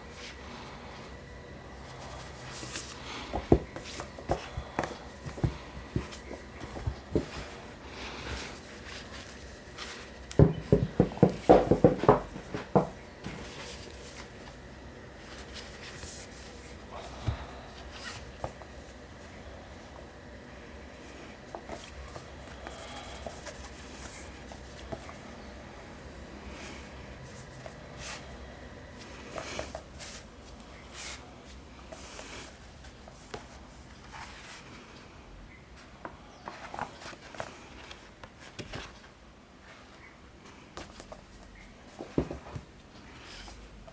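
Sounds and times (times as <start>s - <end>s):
soft rustles: 1.8s - 14.6s, 29.0s - 34.9s
sharp knocks and clatter: 10.4s - 13.0s.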